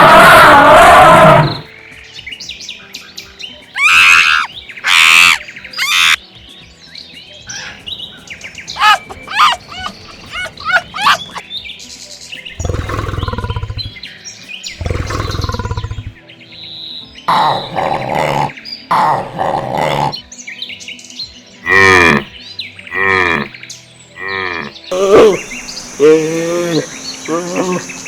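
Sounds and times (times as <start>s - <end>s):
birds chirping and calling: 3.7s - 6.2s, 7.4s - 11.7s, 12.4s - 20.5s, 21.6s - 28.0s.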